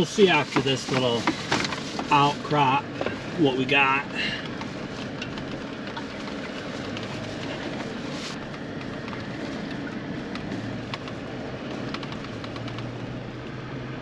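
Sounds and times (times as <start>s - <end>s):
car engine and tyre noise: 0.0s - 14.0s
small clicks and knocks: 8.5s - 13.0s.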